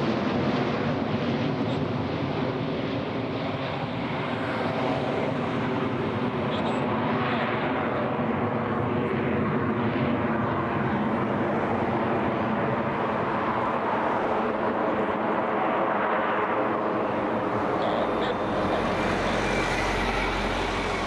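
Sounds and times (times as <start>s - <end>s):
jet engines roaring: 0.0s - 21.0s.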